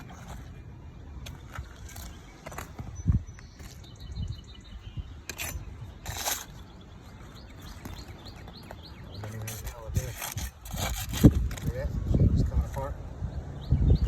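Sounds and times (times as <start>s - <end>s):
shingles scraping: 0.0s - 4.0s, 5.3s - 11.8s.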